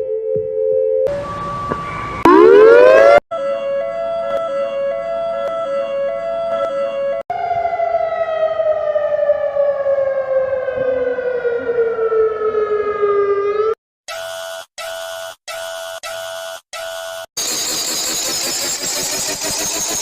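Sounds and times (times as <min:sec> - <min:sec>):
long tone sliding downward: 0:00.8 - 0:03.2
two-pitch alarm warble: 0:01.1 - 0:07.2.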